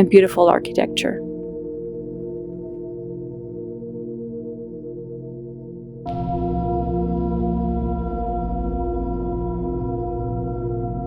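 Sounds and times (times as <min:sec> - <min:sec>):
sustained ambient chord: 0:00.0 - 0:11.0.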